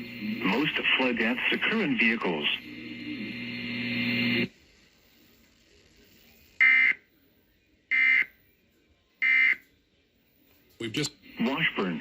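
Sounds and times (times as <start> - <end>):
steady buzzing tone: 0.0 - 1.4, 2.5 - 4.5.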